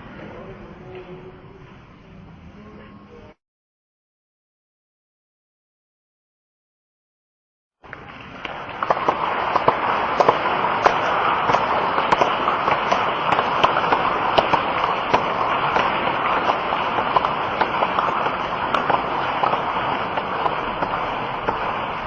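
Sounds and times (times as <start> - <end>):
large crowd applauding: 7.8 - 22.0.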